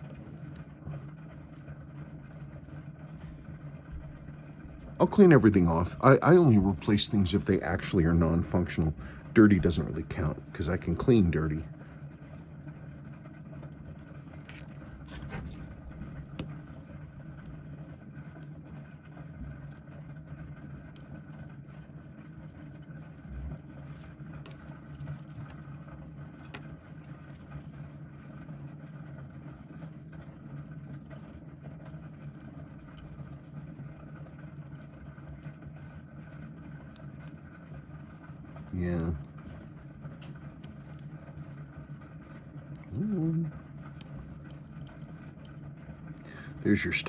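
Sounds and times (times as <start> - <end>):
low electrical hum and hiss: 0.0 - 47.0
small tools clicking and rattling: 26.4 - 27.4.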